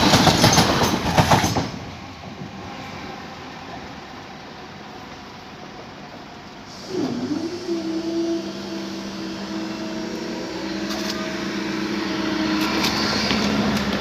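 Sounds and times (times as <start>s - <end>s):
train rumble: 0.0s - 14.0s
electric train motor whine: 6.7s - 14.0s.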